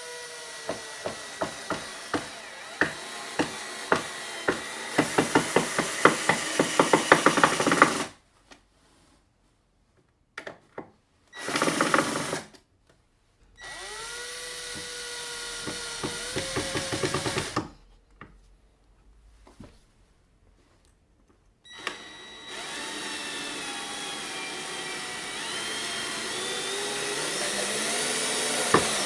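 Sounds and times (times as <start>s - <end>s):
cordless screwdriver motor whine: 21.7s - 24.8s.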